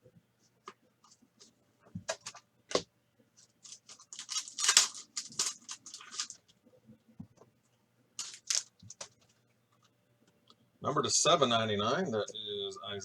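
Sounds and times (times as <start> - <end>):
cards scraping and rustling: 3.4 - 6.5, 8.2 - 9.4.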